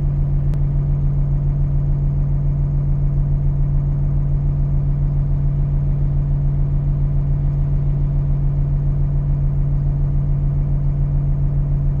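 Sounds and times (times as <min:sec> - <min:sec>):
heavy machine engine humming: 0:00.0 - 0:01.8.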